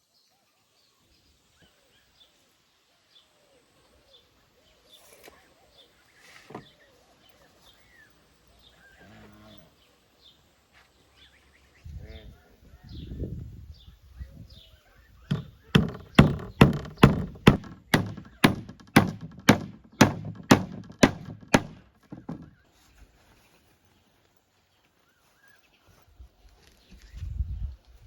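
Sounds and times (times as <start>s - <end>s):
sharp chopping thunks: 15.3s - 22.5s.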